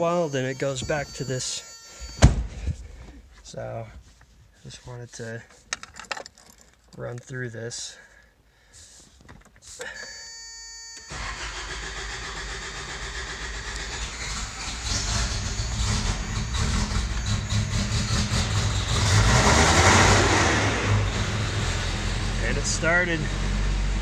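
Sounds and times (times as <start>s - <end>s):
steady tone: 0.0s - 3.2s
car engine cranking and starting: 0.0s - 3.3s, 10.0s - 24.0s.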